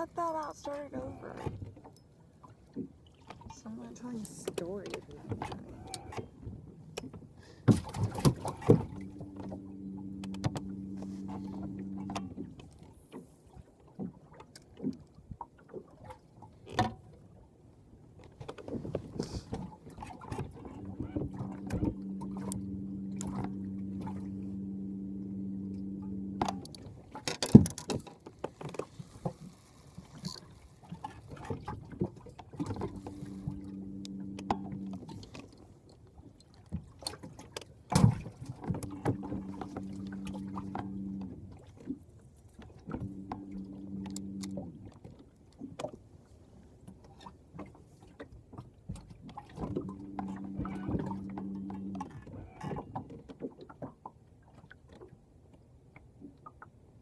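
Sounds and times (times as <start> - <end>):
electric motor humming: 8.1 - 12.5, 20.6 - 26.9, 32.6 - 35.2, 38.6 - 41.5, 42.9 - 44.8, 49.6 - 52.1.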